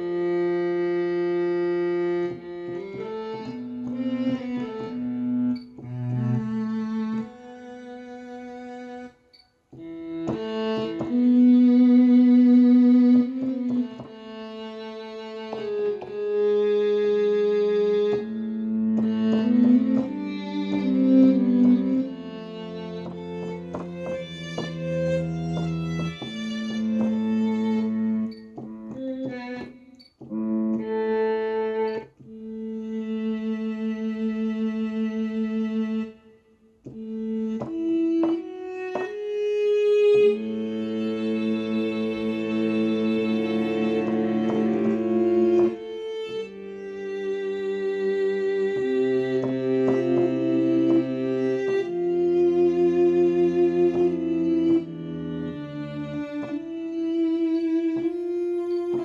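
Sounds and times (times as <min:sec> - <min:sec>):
synthesizer string notes: 0:37.0 - 0:59.0.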